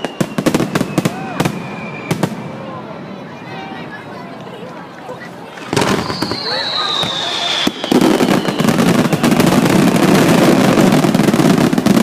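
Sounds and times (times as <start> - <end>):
falling firework whistle: 0.0 - 2.6, 5.6 - 12.0
fireworks crackling: 0.0 - 3.1, 4.4 - 12.0.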